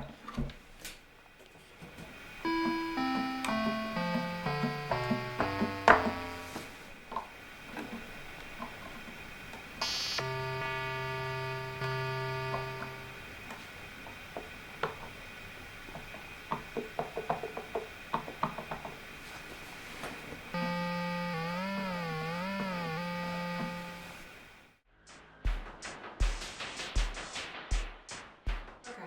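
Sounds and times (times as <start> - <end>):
synthesizer notes: 2.4 - 6.8, 9.8 - 13.3, 20.6 - 24.4.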